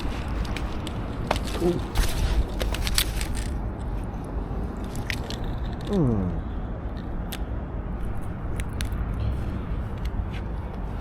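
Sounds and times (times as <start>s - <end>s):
man humming: 5.9s - 6.5s.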